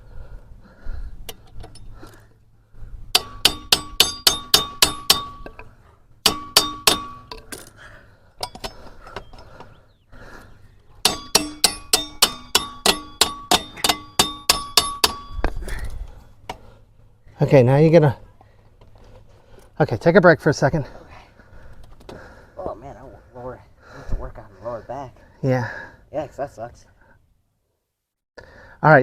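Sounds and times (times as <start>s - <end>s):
hammer striking metal axle: 3.1s - 7.7s, 8.4s - 9.4s, 11.0s - 15.6s.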